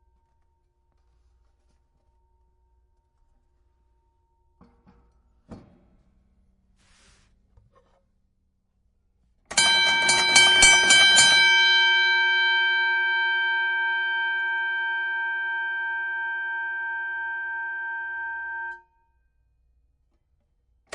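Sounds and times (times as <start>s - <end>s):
boxing ring bell ringing: 9.5s - 18.8s.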